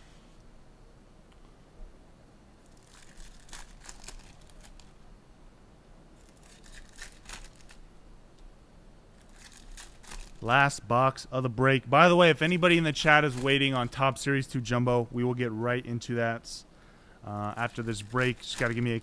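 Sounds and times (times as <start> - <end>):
packaging torn open and crinkled: 2.6 - 5.0, 6.2 - 7.8, 9.2 - 10.5, 12.5 - 14.0, 17.6 - 19.0.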